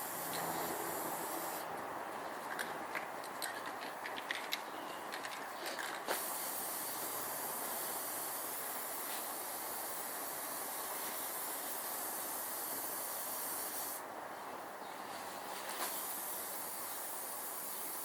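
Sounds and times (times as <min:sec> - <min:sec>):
paint spray hissing: 0:00.0 - 0:01.7, 0:06.1 - 0:14.0, 0:15.6 - 0:18.0.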